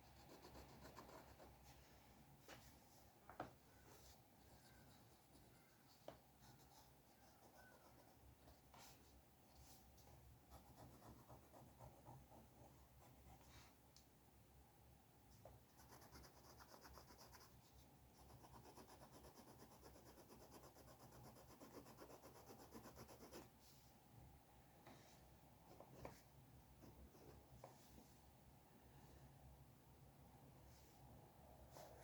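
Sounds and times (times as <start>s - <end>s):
pencil scratching on paper: 0.0s - 1.5s, 15.8s - 17.5s, 18.2s - 23.5s.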